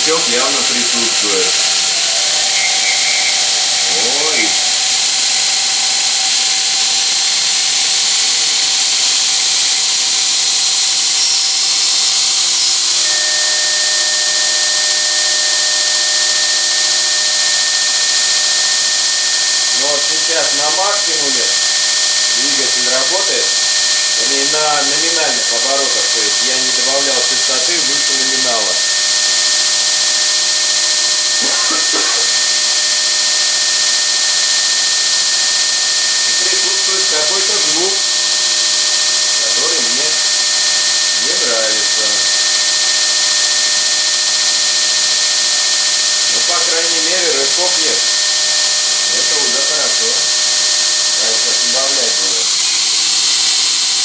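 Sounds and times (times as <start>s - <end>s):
electric motor running with whistle: 0.0s - 54.0s
loud hiss: 0.0s - 54.0s
high whistle tone: 0.1s - 4.7s, 11.2s - 20.9s.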